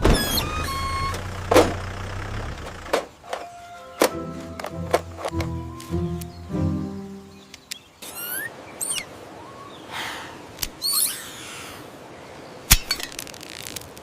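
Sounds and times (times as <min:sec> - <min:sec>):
steady outdoor hiss: 0:00.0 - 0:14.0
bird-like chirps: 0:05.5 - 0:10.0, 0:10.8 - 0:11.6
sharp cracks: 0:12.7 - 0:14.0.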